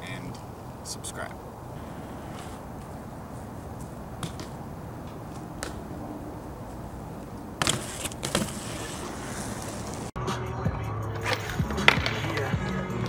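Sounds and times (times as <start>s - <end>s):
bike rolling on pavement: 0.0s - 10.2s.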